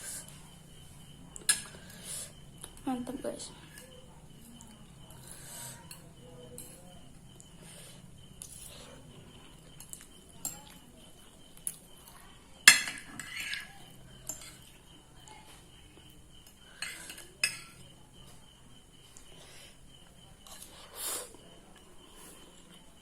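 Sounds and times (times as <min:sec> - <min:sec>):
utensil clinking against a plate: 0:01.4 - 0:18.4.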